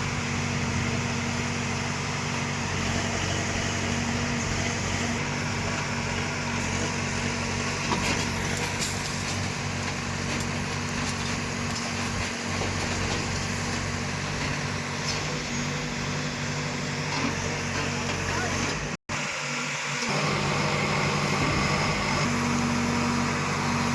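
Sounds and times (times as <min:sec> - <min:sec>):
heavy machinery engine running: 0:00.0 - 0:23.9.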